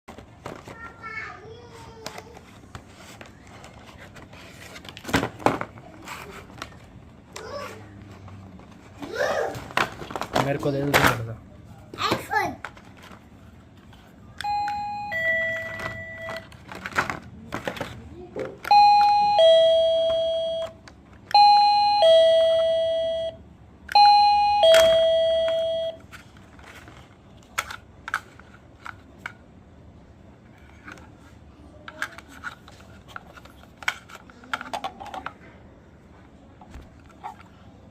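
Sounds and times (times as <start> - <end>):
doorbell ding-dong chime: 14.4 - 16.4, 18.7 - 26.0.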